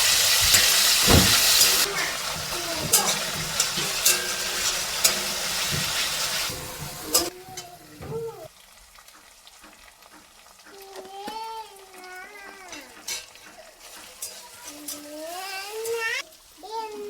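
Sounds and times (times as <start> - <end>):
spoon scraping a pan: 0.0 - 7.7, 12.6 - 16.2
food sizzling in oil: 0.0 - 17.0.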